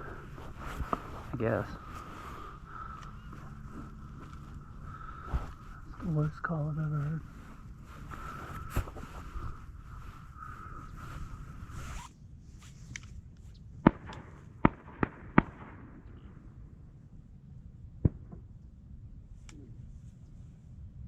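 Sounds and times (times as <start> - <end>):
steady high hum: 0.0 - 12.0
shotgun shots: 13.8 - 16.3.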